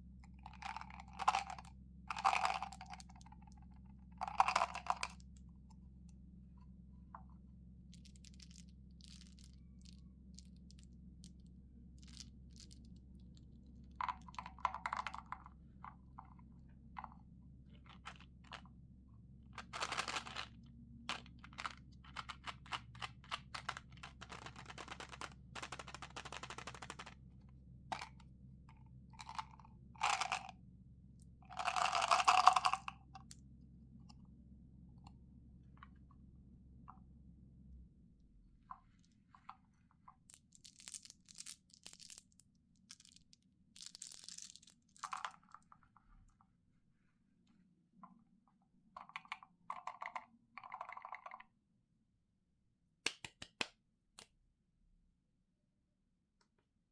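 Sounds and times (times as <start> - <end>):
faint steady hum: 0.0 - 51.5
packaging crinkling and clicking: 19.6 - 20.5, 21.1 - 27.2.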